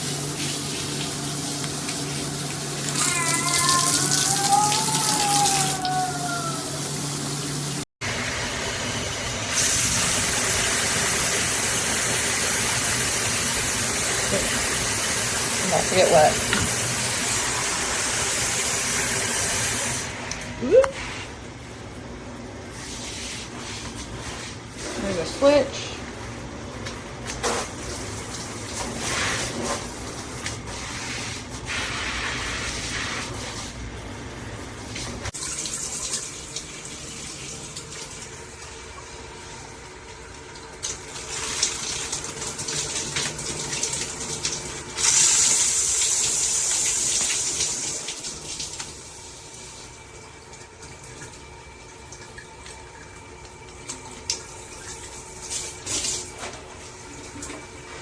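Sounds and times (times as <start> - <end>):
water spraying from shower head: 0.0 - 7.8, 9.5 - 20.1, 27.4 - 33.8, 41.1 - 49.0, 54.7 - 56.6.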